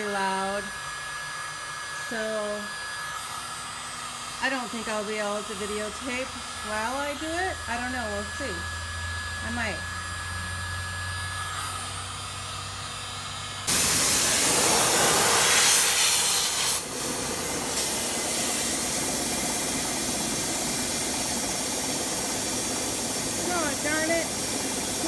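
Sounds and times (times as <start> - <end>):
compressed air hissing: 13.6 - 25.0.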